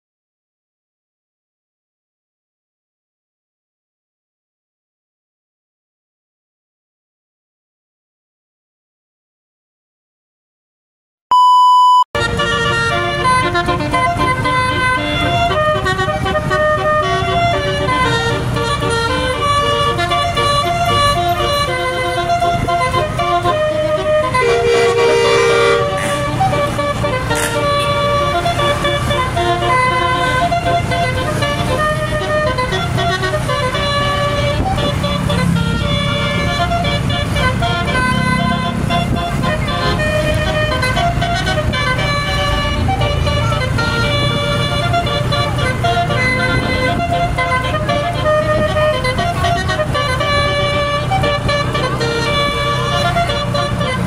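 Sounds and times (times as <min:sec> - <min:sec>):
short steady beep: 0:11.3 - 0:12.1
bus engine running: 0:12.2 - 0:54.0
bus horn playing melody: 0:12.2 - 0:54.0.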